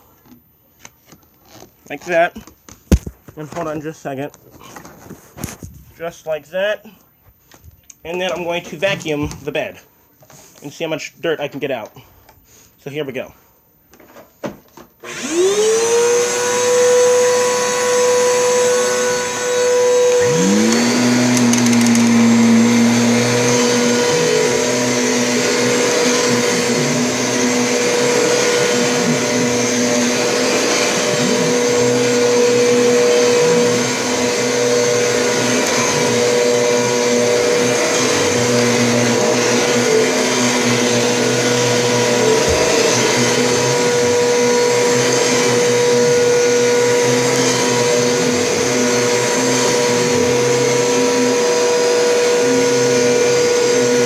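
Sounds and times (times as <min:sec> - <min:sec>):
vacuum cleaner running: 0:15.0 - 0:54.0.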